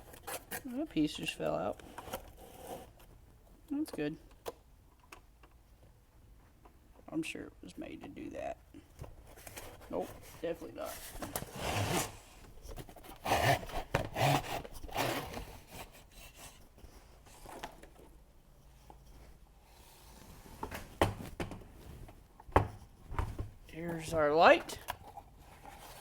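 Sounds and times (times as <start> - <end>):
packaging rubbing and scraping: 9.2 - 17.7, 25.0 - 26.0.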